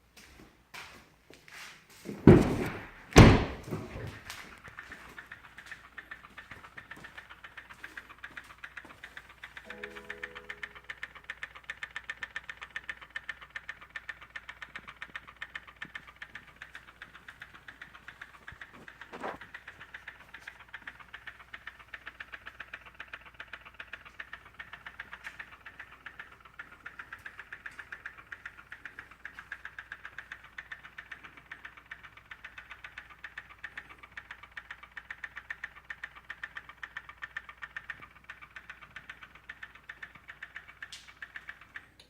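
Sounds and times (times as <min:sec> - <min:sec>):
engine running: 0:02.2 - 0:42.0
rapid engine ticking: 0:02.3 - 0:42.0.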